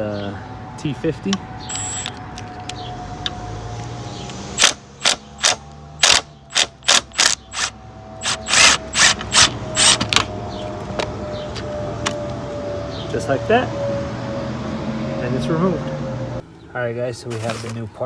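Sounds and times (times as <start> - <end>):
ratchet clicking: 1.7 - 2.2, 4.6 - 10.2.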